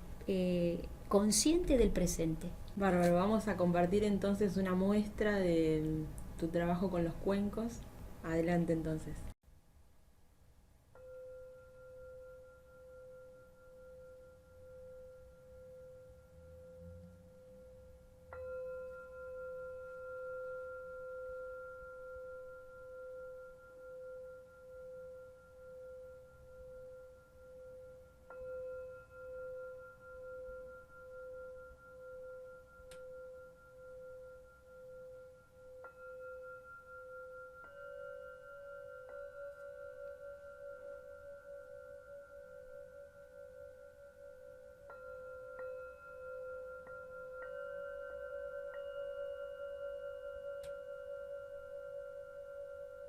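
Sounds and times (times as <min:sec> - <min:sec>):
singing bowls ringing: 0:11.0 - 0:53.0.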